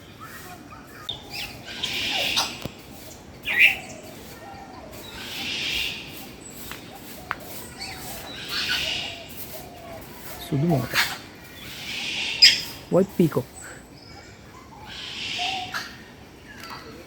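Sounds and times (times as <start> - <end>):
birds squawking: 0.0 - 16.8
faint bird chirping: 0.0 - 17.0.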